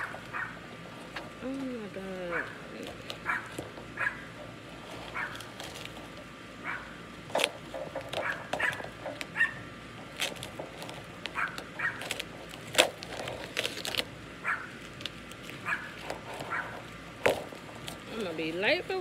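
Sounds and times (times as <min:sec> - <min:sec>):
dog barking: 0:00.0 - 0:00.6, 0:03.2 - 0:04.3, 0:05.1 - 0:05.4, 0:06.6 - 0:07.0, 0:08.2 - 0:08.8, 0:09.4 - 0:09.6, 0:11.4 - 0:12.1, 0:14.4 - 0:14.7, 0:15.6 - 0:16.8
packaging clicking and crackling: 0:02.4 - 0:06.3, 0:07.3 - 0:18.1.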